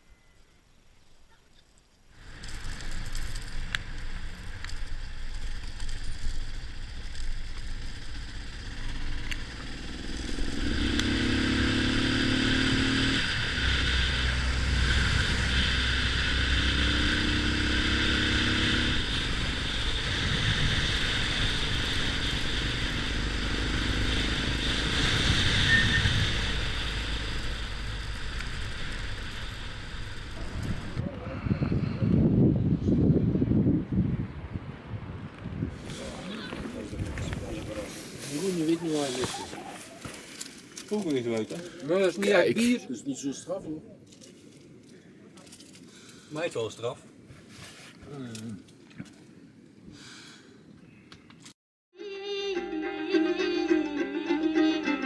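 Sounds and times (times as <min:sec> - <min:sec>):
motorcycle engine running: 0:02.2 - 0:31.1
wind rushing: 0:08.3 - 0:39.9.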